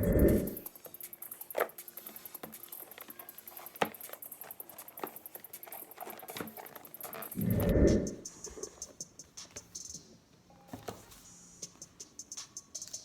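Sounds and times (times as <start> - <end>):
tablet sliding out of cardboard box: 1.6 - 8.2.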